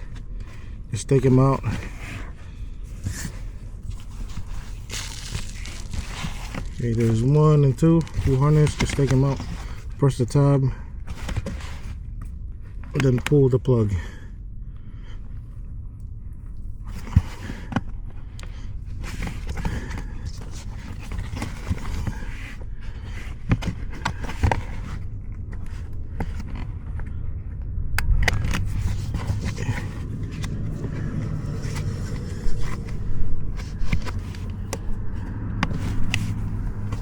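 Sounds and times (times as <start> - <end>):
scraping and rustling plastic trim: 2.9 - 9.9.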